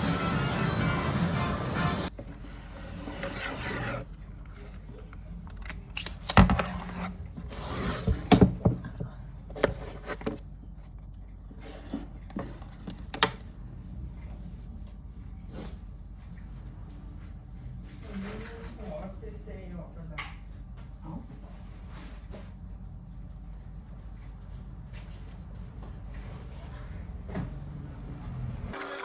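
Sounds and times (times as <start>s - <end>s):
rubbing and scraping: 1.1s - 5.1s.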